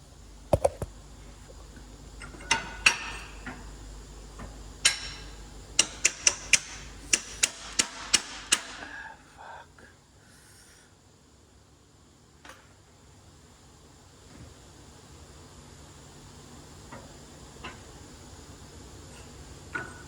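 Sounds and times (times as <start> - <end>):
sharp metal-on-metal knocks: 5.8 - 8.8.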